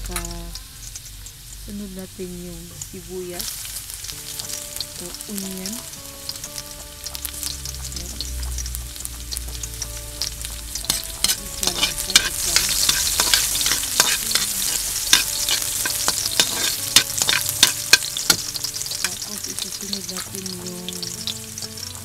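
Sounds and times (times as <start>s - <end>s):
onion and garlic sizzling in fat: 0.0s - 22.0s
utensil stirring and clicking on pan: 9.6s - 21.3s.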